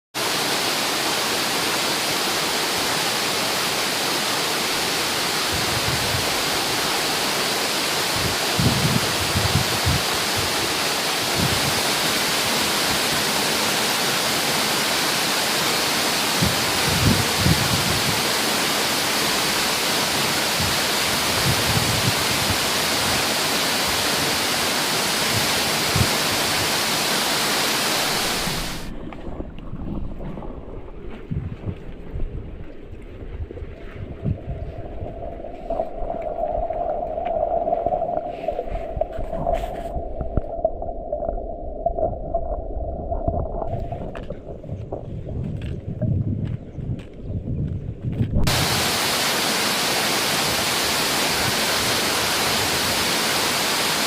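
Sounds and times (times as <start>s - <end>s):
water rushing: 0.2s - 46.0s, 48.4s - 54.0s
low rumble: 28.3s - 48.6s
soft low thumps: 28.9s - 48.6s
steady rushing noise: 34.0s - 47.2s, 48.0s - 54.0s.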